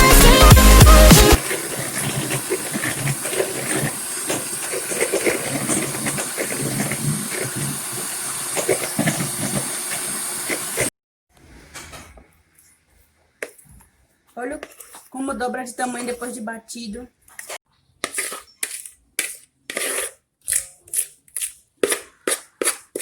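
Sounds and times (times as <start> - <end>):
electric mixer rattling and hissing: 0.0 - 10.9.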